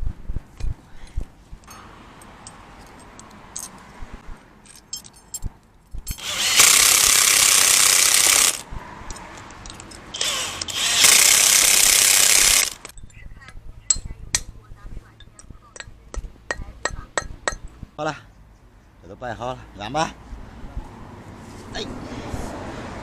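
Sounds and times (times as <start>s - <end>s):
parts clicking and clattering: 4.6s - 13.0s
power tool running: 6.2s - 8.6s, 10.2s - 12.9s.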